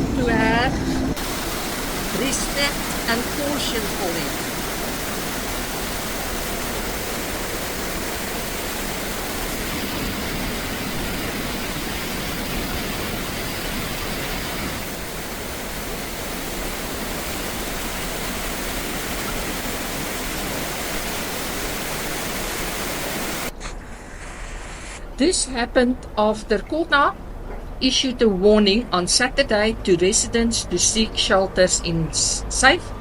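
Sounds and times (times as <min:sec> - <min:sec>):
floodwater rushing: 0:00.0 - 0:23.5.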